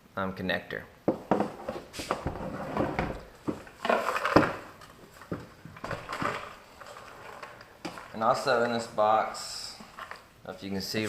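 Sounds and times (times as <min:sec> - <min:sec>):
packaging rustling: 0:02.0 - 0:10.3.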